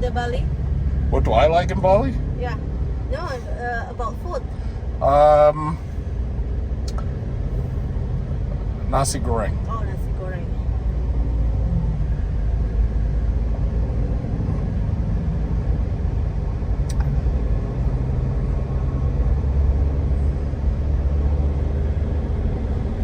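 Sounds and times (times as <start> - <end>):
car engine and road noise: 0.0 - 23.0.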